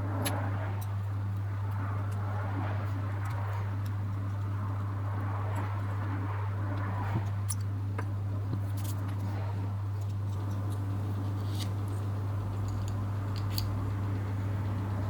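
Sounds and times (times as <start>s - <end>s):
steady low hum: 0.0s - 15.0s
small parts clicking and tapping: 10.0s - 14.9s.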